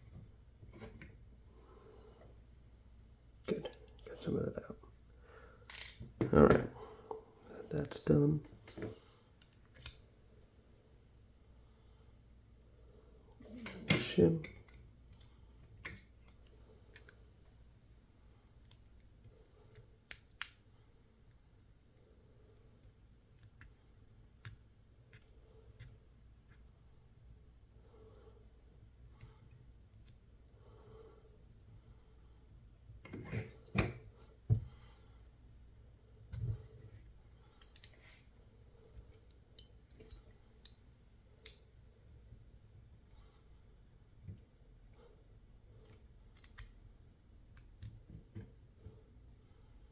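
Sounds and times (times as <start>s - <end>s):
small metal lock parts clicking: 5.6s - 6.0s, 9.4s - 10.0s, 46.3s - 46.7s
metal tools clicking in a lock: 9.4s - 10.0s.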